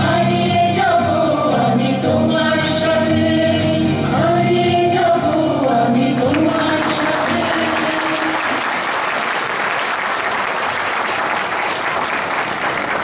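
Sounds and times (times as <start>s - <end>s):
audience applauding: 5.8s - 13.0s.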